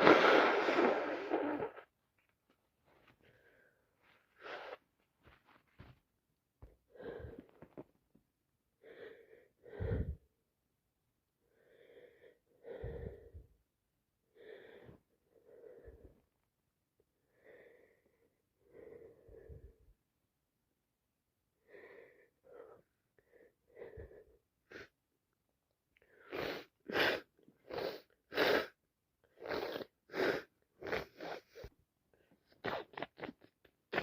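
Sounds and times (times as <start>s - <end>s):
woman wheezy congested breathing: 6.9s - 7.8s, 8.8s - 10.3s, 11.5s - 13.5s.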